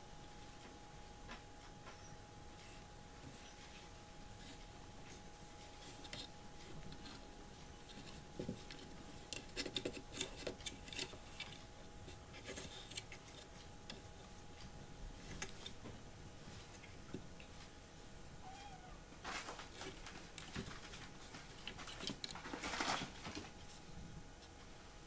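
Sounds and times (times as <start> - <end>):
faint scratching and clicking: 0.5 - 18.1, 19.2 - 24.8.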